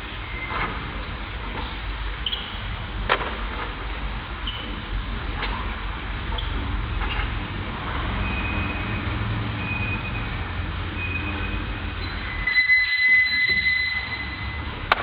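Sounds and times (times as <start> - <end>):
machinery low rumble: 0.0 - 15.0
steady high whine: 0.0 - 15.0
thin high squeal: 11.0 - 14.6.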